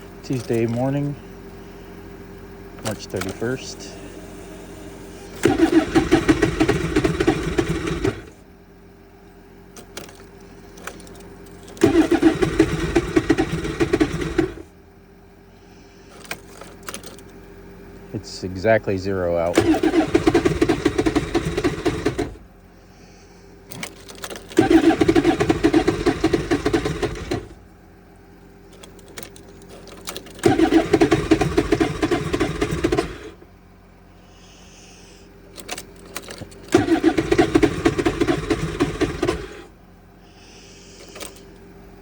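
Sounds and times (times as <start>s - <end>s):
snowmobile engine cranking: 0.0s - 1.3s, 2.8s - 8.4s, 9.6s - 14.7s, 15.7s - 17.4s, 18.1s - 27.6s, 28.6s - 33.4s, 34.3s - 39.7s, 40.3s - 41.6s
clicks: 0.2s - 1.2s, 2.8s - 4.1s, 9.8s - 13.6s, 16.1s - 17.4s, 23.7s - 25.3s, 35.6s - 37.6s, 41.0s - 41.6s.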